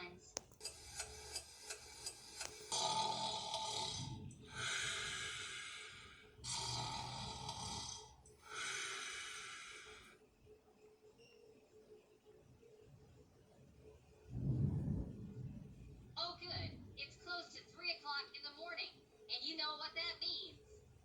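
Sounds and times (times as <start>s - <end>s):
person snoring: 2.6s - 10.1s.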